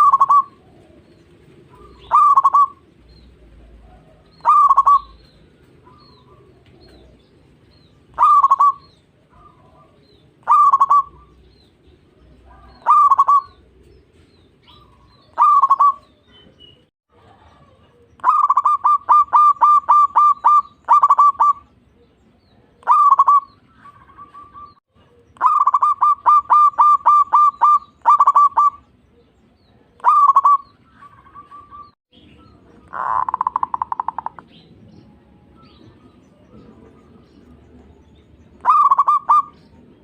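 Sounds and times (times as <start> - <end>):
dove cooing: 0.0 - 34.6, 35.2 - 40.0.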